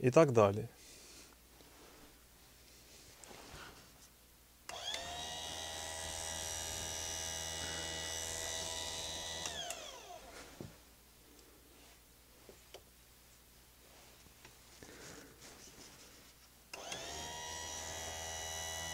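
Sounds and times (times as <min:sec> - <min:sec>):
grinder motor whining: 0:04.7 - 0:10.4, 0:16.8 - 0:18.9.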